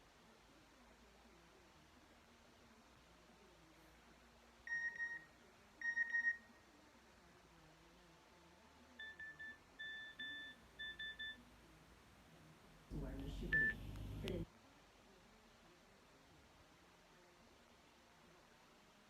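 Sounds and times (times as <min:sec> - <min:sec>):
phone ringtone beeps: 0:05.8 - 0:06.4, 0:09.0 - 0:11.4, 0:13.5 - 0:14.2.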